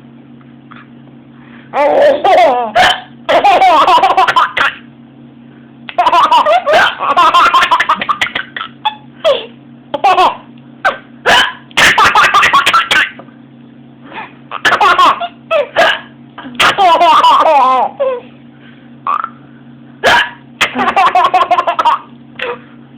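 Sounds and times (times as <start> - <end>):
young child laughing: 1.7 - 4.8, 5.9 - 13.2, 14.5 - 18.3, 20.6 - 22.6
hiccups: 2.8 - 3.1, 10.8 - 11.9, 15.7 - 16.1, 20.0 - 20.8.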